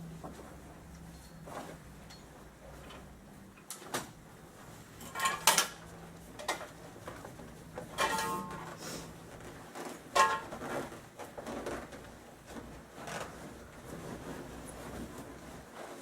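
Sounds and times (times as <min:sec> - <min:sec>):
metal cot parts knocking and clinking: 0:05.0 - 0:06.7, 0:07.8 - 0:08.8, 0:09.8 - 0:12.0.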